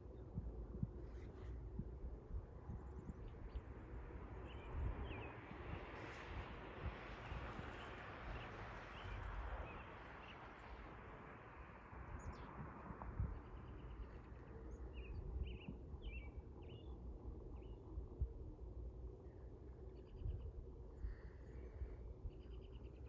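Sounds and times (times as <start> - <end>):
outdoor rumble and hiss: 0.0 - 23.0
birds chirping: 11.8 - 18.0.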